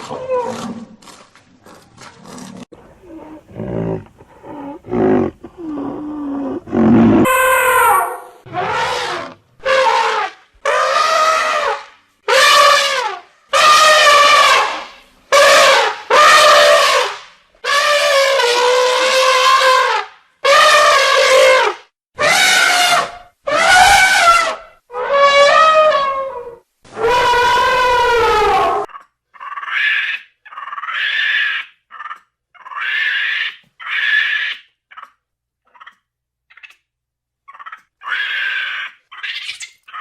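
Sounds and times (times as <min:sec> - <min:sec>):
animal horn-like calls: 0:03.0 - 0:28.9.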